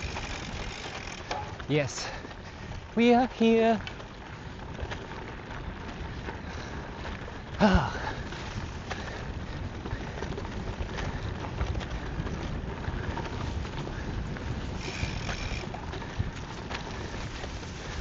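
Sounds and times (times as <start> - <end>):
bike knocks and rattles: 0.0 - 1.8, 7.0 - 18.0
bike tyres on rough trail: 0.0 - 18.0
wind rumbling on microphone: 0.0 - 18.0.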